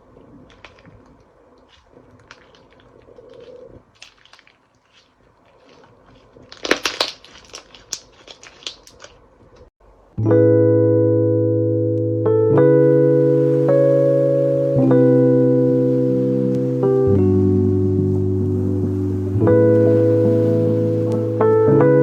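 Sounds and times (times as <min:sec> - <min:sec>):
slime clicking and crackling: 0:00.4 - 0:09.7.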